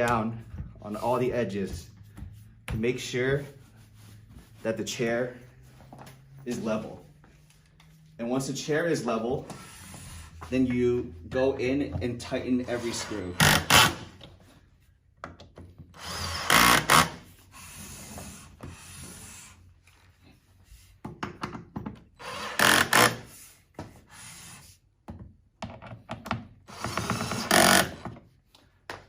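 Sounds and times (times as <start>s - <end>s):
power drill driving screws: 16.0s - 18.1s, 22.2s - 23.3s, 26.7s - 28.0s.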